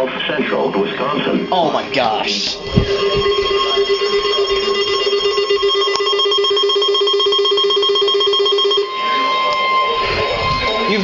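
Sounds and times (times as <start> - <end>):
steady high alert tone: 0.0 - 11.0
buzzing electronic alert tone: 2.6 - 11.0.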